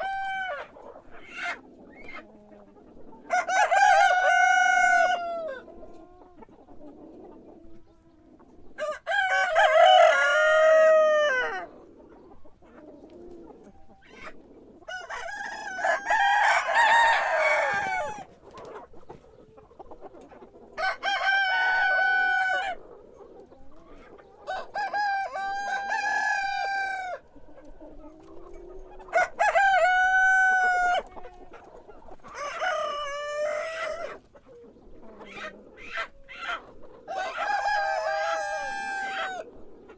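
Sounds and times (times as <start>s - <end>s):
rooster crowing: 3.3s - 5.6s, 8.8s - 11.6s, 14.9s - 18.3s, 20.8s - 22.8s, 29.1s - 31.0s, 37.1s - 39.4s.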